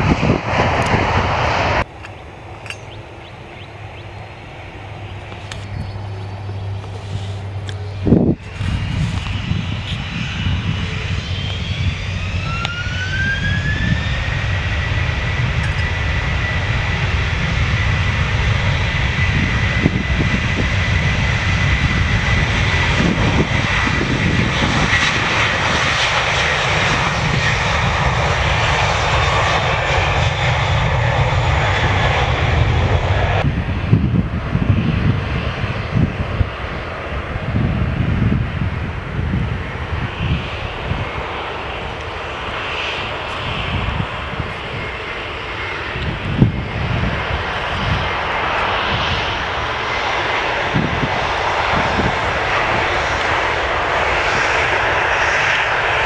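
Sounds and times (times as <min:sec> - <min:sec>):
engine whine: 0:00.0 - 0:56.0
jet engines rumbling: 0:00.0 - 0:56.0.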